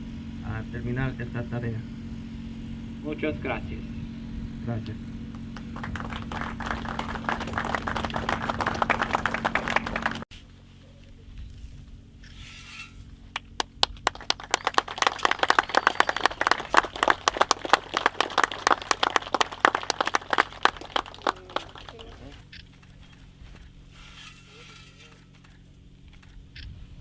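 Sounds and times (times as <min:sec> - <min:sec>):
steady hum: 0:00.0 - 0:27.0
crowd applauding: 0:05.3 - 0:10.3, 0:13.4 - 0:22.4.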